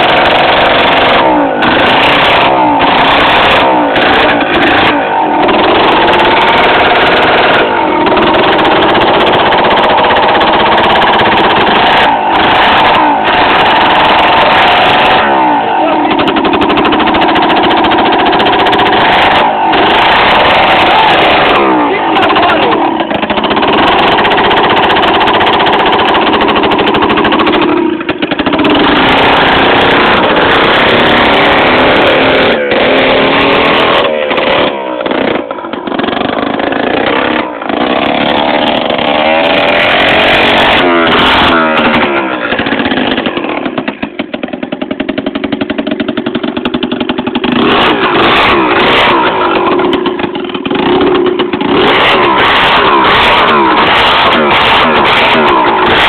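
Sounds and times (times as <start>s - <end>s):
scooter engine revving: 0.0s - 56.0s.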